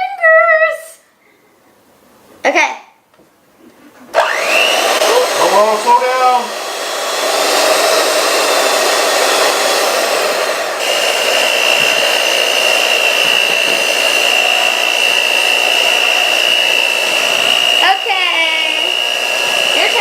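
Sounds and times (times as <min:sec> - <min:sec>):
electric hand mixer running: 0:04.1 - 0:20.0
steady high whine: 0:07.5 - 0:20.0.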